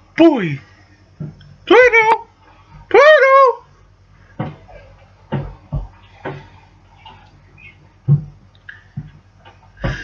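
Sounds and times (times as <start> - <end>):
soft thumps: 4.4 - 7.2, 8.0 - 10.0.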